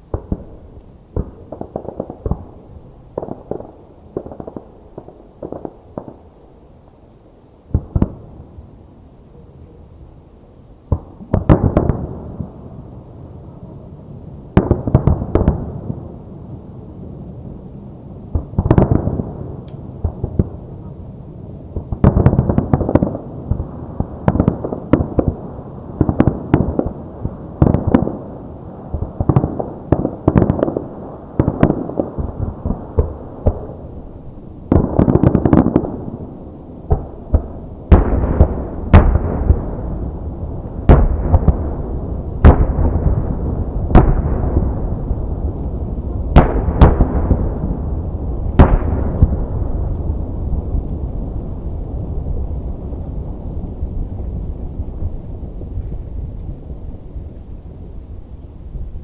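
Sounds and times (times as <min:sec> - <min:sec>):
deep firework booms: 0:00.0 - 0:06.3, 0:10.9 - 0:12.8, 0:21.7 - 0:58.2
crackling firework bursts: 0:00.0 - 0:06.8, 0:17.6 - 0:59.0.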